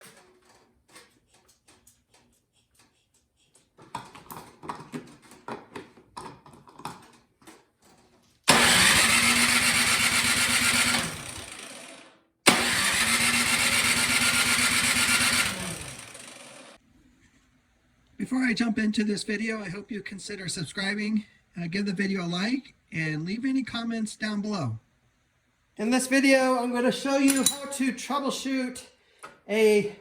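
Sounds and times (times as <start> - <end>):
electric starter cranking engine: 8.5 - 16.8.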